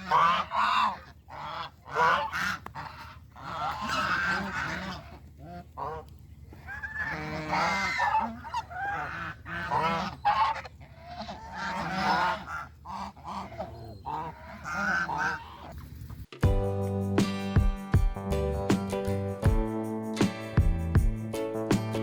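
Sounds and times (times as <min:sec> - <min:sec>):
geese honking: 0:00.0 - 0:15.8.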